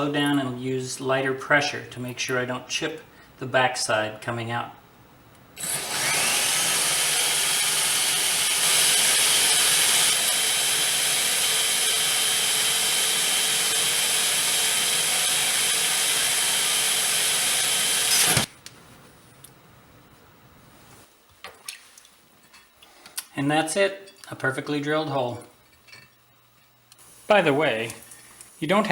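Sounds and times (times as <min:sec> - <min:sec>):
drill grinding through glass: 0:05.6 - 0:18.5.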